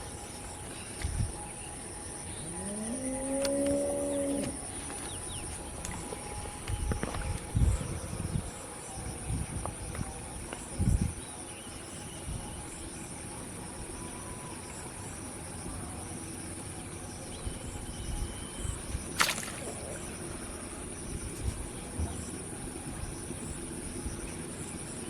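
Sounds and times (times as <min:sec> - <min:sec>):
insect chirring: 0:17.8 - 0:21.5.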